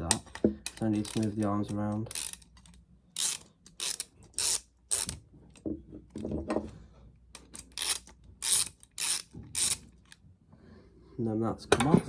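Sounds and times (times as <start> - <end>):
hand tool ratcheting: 0.0 - 5.2, 7.4 - 10.2.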